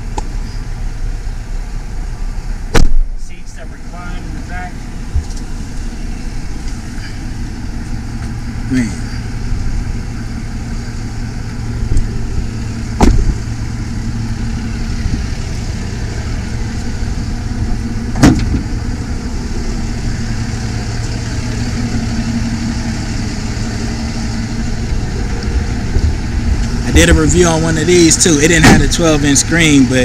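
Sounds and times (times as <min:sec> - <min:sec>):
vehicle engine idling: 0:00.0 - 0:30.0
sharp knocks: 0:13.0 - 0:13.5.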